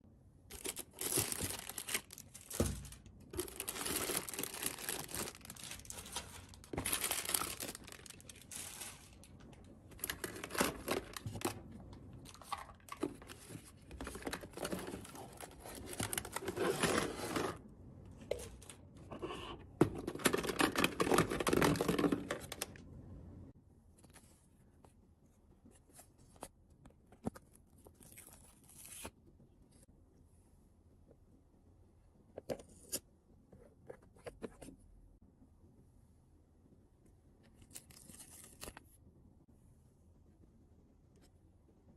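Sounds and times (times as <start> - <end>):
packaging tearing and crinkling: 0.5 - 9.4, 10.0 - 11.5.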